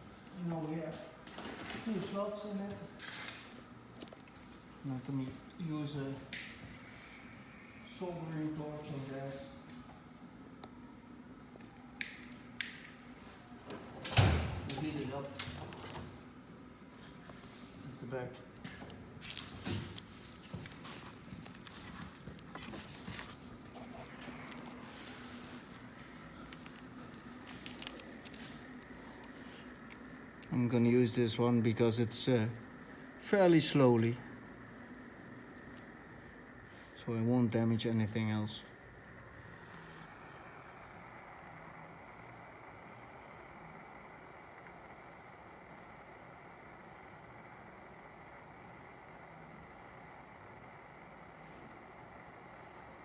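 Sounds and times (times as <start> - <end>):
soldering torch hissing: 19.2 - 53.0.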